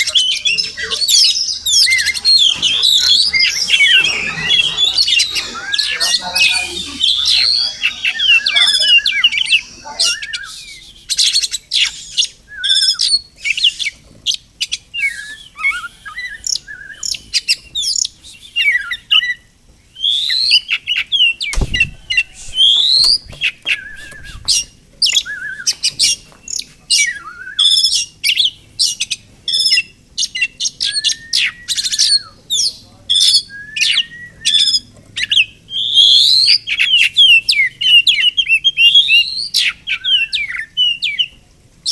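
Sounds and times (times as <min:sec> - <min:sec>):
bird singing whistles and chirps: 0:00.0 - 0:14.0, 0:14.6 - 0:41.9
low thump: 0:21.5 - 0:22.3.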